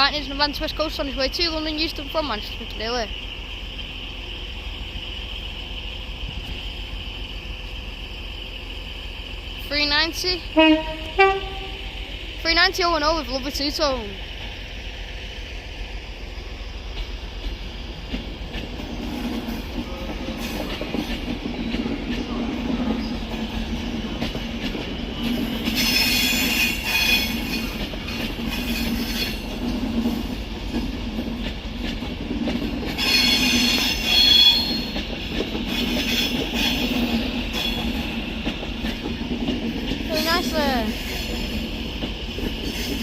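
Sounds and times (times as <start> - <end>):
electric train rumbling: 0.0 - 43.0
train wheels squealing: 18.7 - 30.4, 32.8 - 38.9, 40.0 - 43.0.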